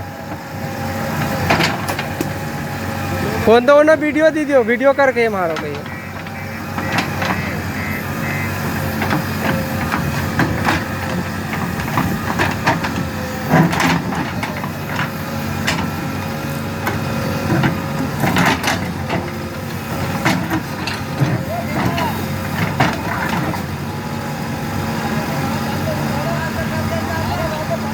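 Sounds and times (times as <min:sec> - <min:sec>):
diesel engine running: 0:00.0 - 0:27.9
sharp knocks and clatters: 0:01.4 - 0:02.4, 0:08.8 - 0:16.0, 0:16.8 - 0:23.6.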